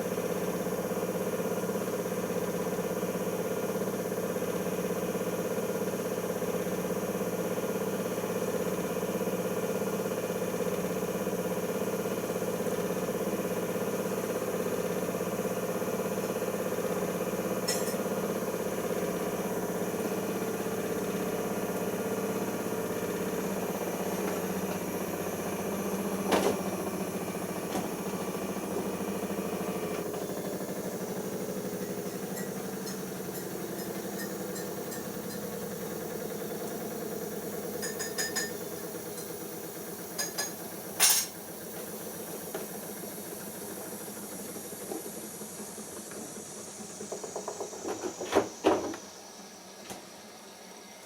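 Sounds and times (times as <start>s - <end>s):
washing machine motor whine: 0.0s - 51.0s
washing machine clicks and clunks: 24.0s - 29.1s.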